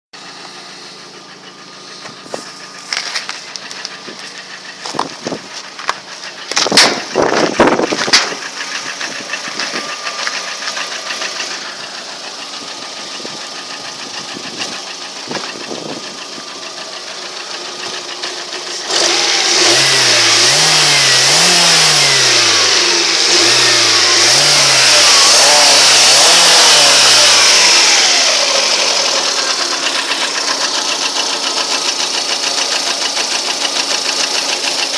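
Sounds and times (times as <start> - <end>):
car engine running: 0.2 - 34.9
engine revving: 1.9 - 34.9
sharp engine knocks: 4.8 - 8.5.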